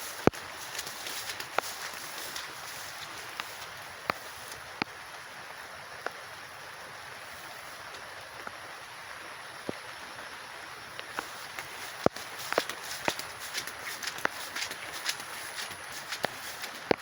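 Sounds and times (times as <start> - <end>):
rain hiss: 0.0 - 17.0.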